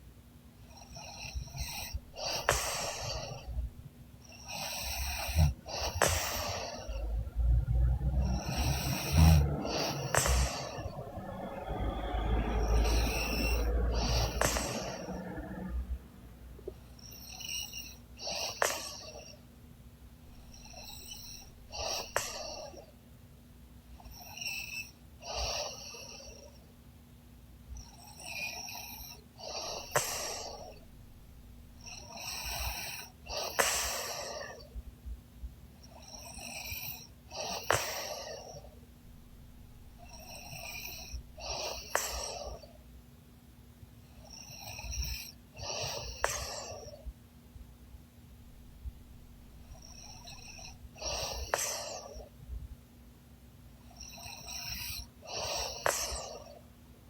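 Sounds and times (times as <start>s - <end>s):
woman snoring: 4.6s - 15.9s.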